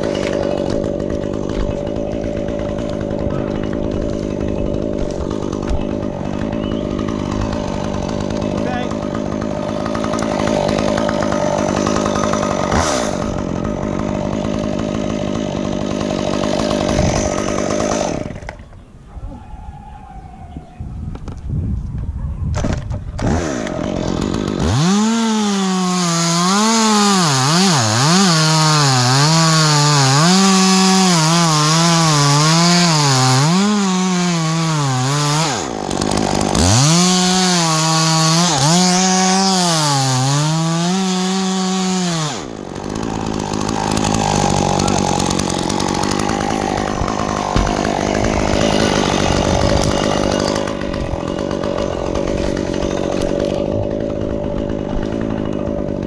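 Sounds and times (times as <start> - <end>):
chainsaw idling with knocks: 0.0 - 18.7, 22.6 - 56.0
chainsaw cutting limbs: 0.0 - 18.9, 22.5 - 56.0.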